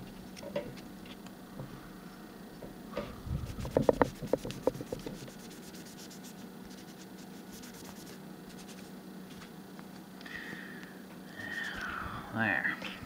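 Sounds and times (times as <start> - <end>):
rubbing and scraping on wood: 3.4 - 8.9.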